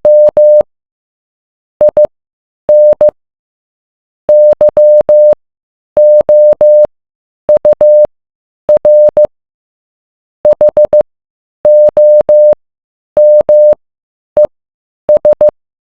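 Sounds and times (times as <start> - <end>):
morse code beeps: 0.0 - 0.6, 1.8 - 2.1, 2.7 - 3.2, 4.3 - 5.4, 6.0 - 6.9, 7.5 - 8.1, 8.7 - 9.3, 10.5 - 11.0, 11.7 - 12.6, 13.2 - 13.8, 15.1 - 15.5.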